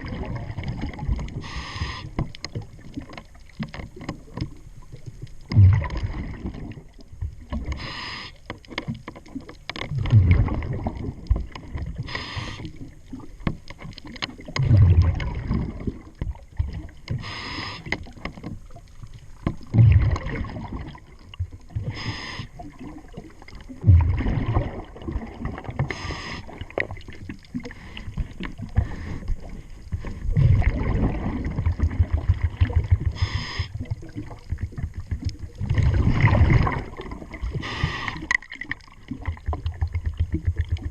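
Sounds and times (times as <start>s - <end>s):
diver breathing through regulator: 1.4s - 2.3s, 7.7s - 8.4s, 12.0s - 12.8s, 17.1s - 18.0s, 21.8s - 22.6s, 25.8s - 26.6s, 27.6s - 30.7s, 33.0s - 33.9s, 37.5s - 38.4s.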